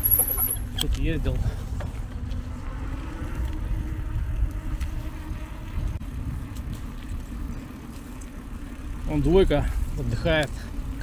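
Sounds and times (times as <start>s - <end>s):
wind and road noise rumble: 0.0s - 11.0s.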